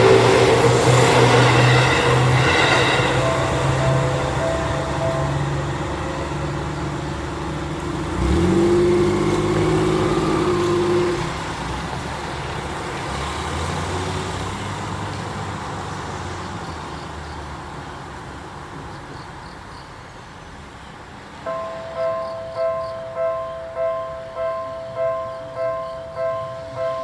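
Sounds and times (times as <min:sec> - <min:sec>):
vehicle accelerating: 0:00.0 - 0:19.1
road traffic: 0:00.0 - 0:27.0.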